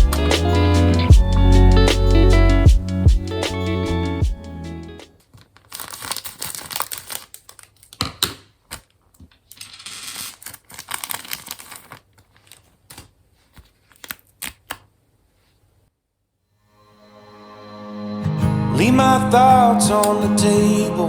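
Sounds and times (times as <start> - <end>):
packaging crinkling and rustling: 5.2 - 15.6.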